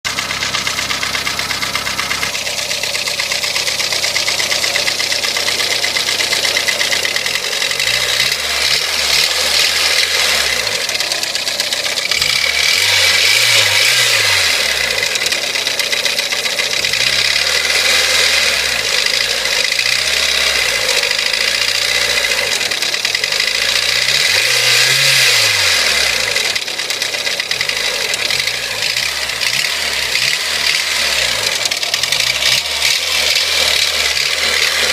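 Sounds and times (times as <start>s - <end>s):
car engine running: 0.0s - 34.9s
rapid engine knocking: 0.1s - 34.9s.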